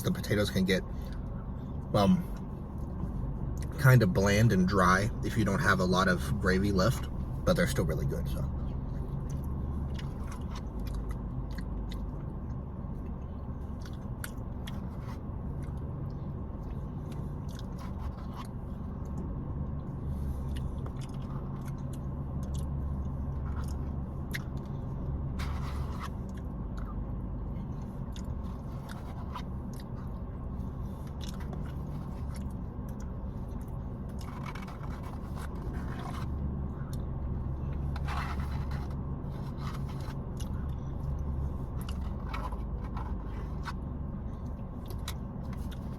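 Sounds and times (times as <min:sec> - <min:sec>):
steady low hum: 0:00.0 - 0:45.9
person chewing: 0:09.0 - 0:15.8, 0:16.6 - 0:19.2, 0:20.3 - 0:27.0, 0:27.7 - 0:45.9.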